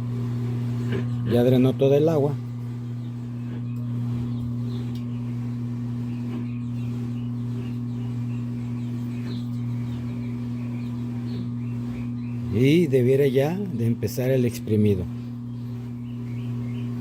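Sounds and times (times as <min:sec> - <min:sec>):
washing machine humming: 0:00.0 - 0:17.0.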